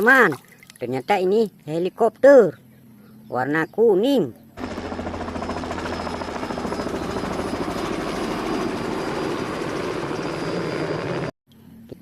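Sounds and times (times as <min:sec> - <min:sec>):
helicopter rotor chop and engine: 0:04.6 - 0:11.3.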